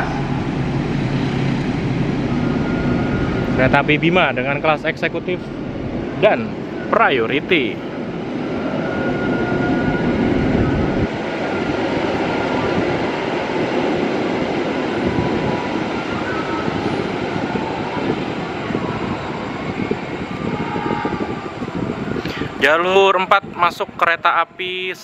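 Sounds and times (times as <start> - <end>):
train wheels running on rails: 0.0 - 24.2.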